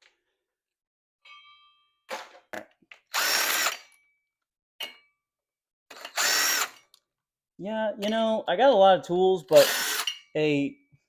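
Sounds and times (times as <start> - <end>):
power drill spinning up: 3.1 - 3.8, 5.9 - 6.8, 9.6 - 10.2.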